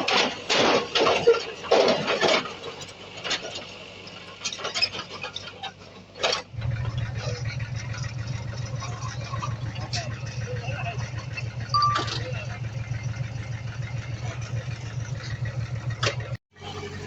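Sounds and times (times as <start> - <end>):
diesel engine rumbling: 0.0 - 17.0
sharp metal clanks and knocks: 11.2 - 13.3.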